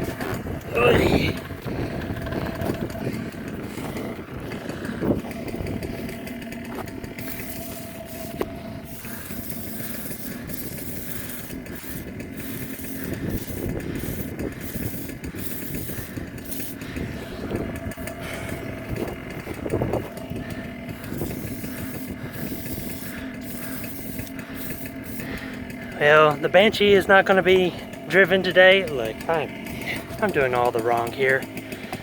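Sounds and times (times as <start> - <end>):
two-stroke engine idling: 0.0 - 32.0.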